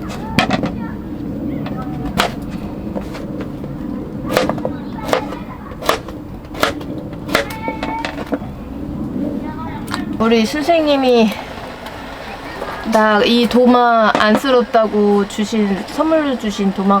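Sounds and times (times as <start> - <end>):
steady low hum: 0.0 - 17.0
knife chopping on cutting board: 4.3 - 8.1.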